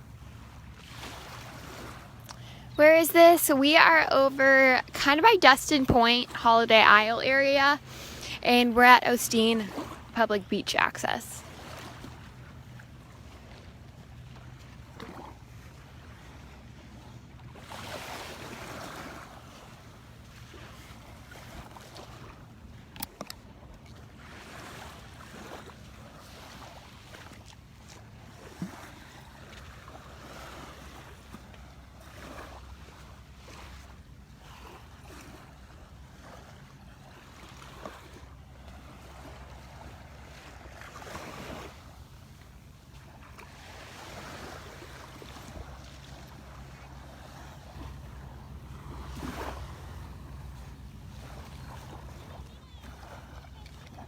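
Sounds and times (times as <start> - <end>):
small waves breaking on sand: 0.0 - 54.0
low wind rumble on microphone: 43.8 - 53.5.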